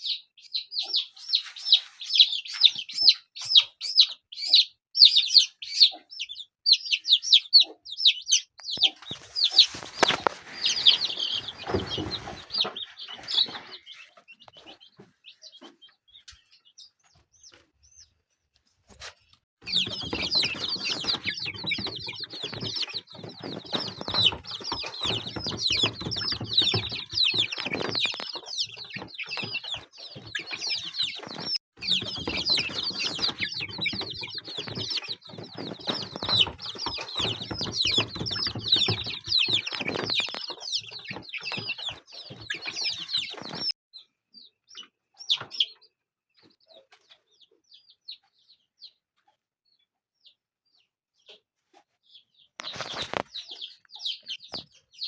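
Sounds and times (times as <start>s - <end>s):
chicks peeping: 0.0s - 55.0s
rustling: 8.9s - 15.2s, 18.8s - 43.7s.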